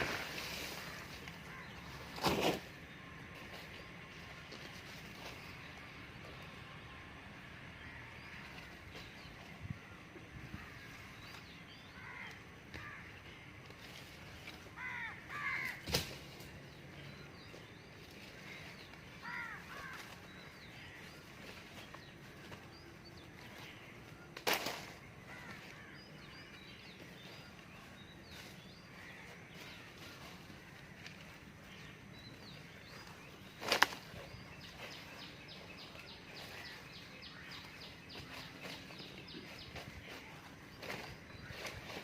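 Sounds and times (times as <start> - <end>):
crows cawing: 0.7 - 2.0, 11.9 - 13.4, 14.7 - 15.9, 18.4 - 20.2, 25.3 - 26.2
small birds chirping: 10.6 - 42.0.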